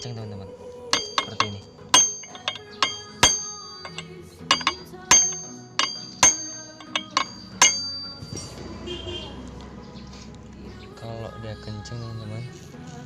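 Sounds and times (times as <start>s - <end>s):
hammer striking metal chisel: 0.9s - 8.6s.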